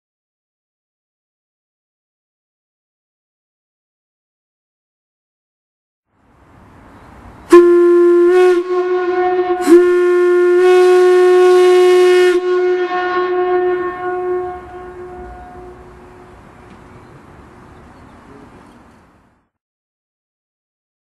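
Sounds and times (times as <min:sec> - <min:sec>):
steam whistle blasts: 0:07.5 - 0:16.4.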